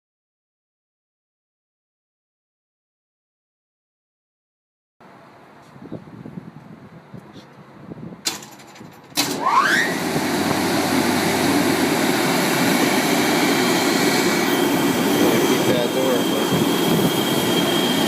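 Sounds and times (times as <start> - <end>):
air compressor engine running: 9.2 - 18.0.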